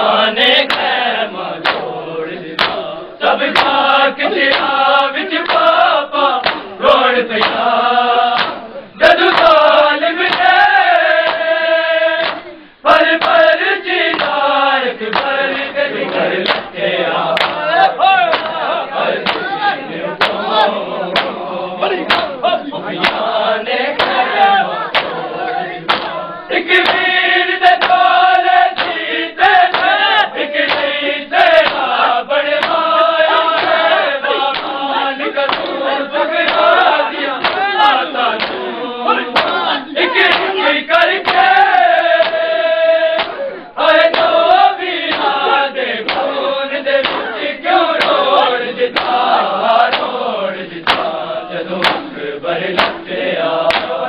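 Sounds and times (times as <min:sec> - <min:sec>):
men chanting in chorus: 0:00.0 - 0:54.0
chest slaps: 0:01.6 - 0:01.9, 0:02.6 - 0:02.9, 0:03.5 - 0:03.8, 0:04.4 - 0:04.7, 0:05.4 - 0:05.7, 0:06.4 - 0:06.8, 0:07.4 - 0:07.6, 0:08.3 - 0:08.7, 0:09.3 - 0:09.6, 0:10.3 - 0:10.6, 0:12.2 - 0:12.5, 0:14.1 - 0:14.4, 0:16.0 - 0:16.7, 0:17.4 - 0:17.7, 0:18.3 - 0:18.6, 0:19.2 - 0:19.6, 0:20.2 - 0:20.4, 0:21.2 - 0:21.4, 0:22.1 - 0:22.4, 0:23.0 - 0:23.3, 0:24.0 - 0:24.2, 0:24.9 - 0:25.2, 0:25.9 - 0:26.2, 0:27.8 - 0:28.0, 0:28.8 - 0:29.0, 0:30.7 - 0:30.9, 0:31.6 - 0:31.9, 0:33.6 - 0:34.8, 0:35.4 - 0:35.8, 0:37.4 - 0:37.7, 0:38.4 - 0:38.6, 0:39.4 - 0:39.6, 0:40.3 - 0:40.5, 0:43.2 - 0:44.3, 0:45.1 - 0:45.4, 0:46.0 - 0:46.3, 0:47.0 - 0:47.4, 0:48.0 - 0:48.2, 0:49.0 - 0:49.2, 0:49.9 - 0:50.1, 0:50.8 - 0:51.1, 0:51.8 - 0:52.1, 0:52.8 - 0:53.1, 0:53.7 - 0:54.0.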